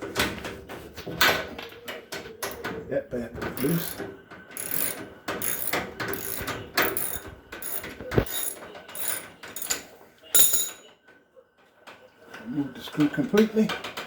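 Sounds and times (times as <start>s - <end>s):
socket ratchet clicking: 3.6s - 4.0s, 4.6s - 9.8s, 10.4s - 10.7s.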